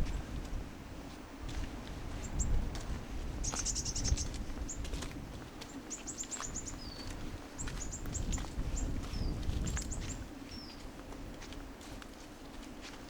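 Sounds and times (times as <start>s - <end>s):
faint footsteps: 0.0s - 13.0s
wind rumble on microphone: 0.0s - 13.0s
small bird chirping: 3.4s - 4.8s.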